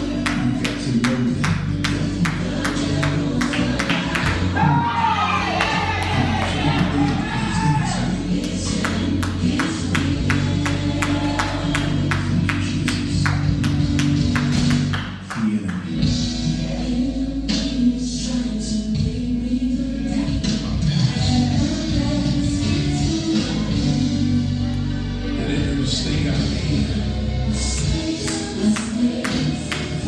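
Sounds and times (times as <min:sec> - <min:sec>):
audience noise: 0:00.0 - 0:13.3
gospel song: 0:00.0 - 0:30.0
musical accompaniment: 0:00.0 - 0:30.0.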